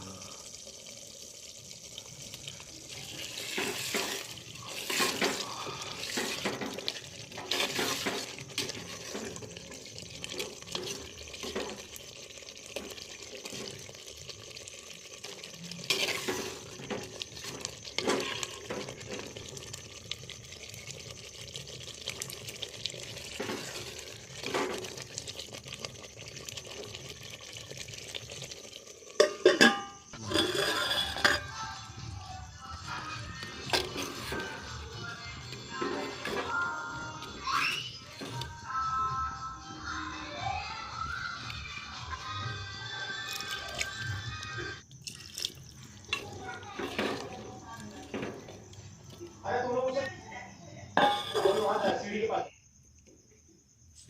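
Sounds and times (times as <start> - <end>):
spoon scraping a cooking pot: 3.1 - 11.8, 15.8 - 19.6, 29.2 - 31.8, 33.4 - 34.7, 51.0 - 52.1.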